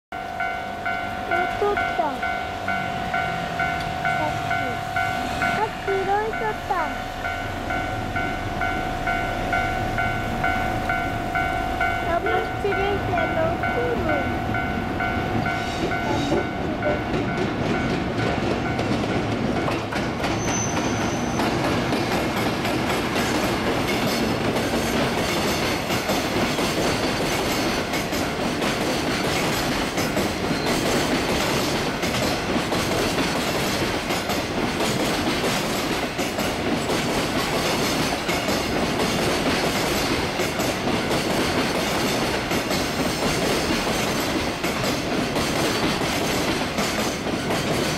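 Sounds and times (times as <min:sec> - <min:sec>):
freight train passing: 0:00.1 - 0:47.9
wagon wheels clattering over rails: 0:15.4 - 0:47.9.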